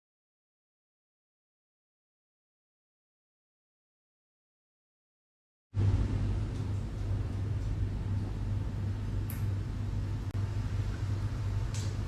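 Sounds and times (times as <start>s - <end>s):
steady low rumble: 5.8s - 12.0s.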